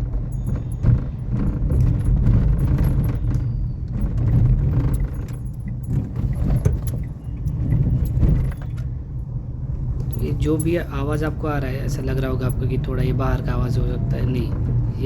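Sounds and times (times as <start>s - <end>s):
dashboard rattling: 0.0s - 8.9s
car road rumble: 0.0s - 15.0s.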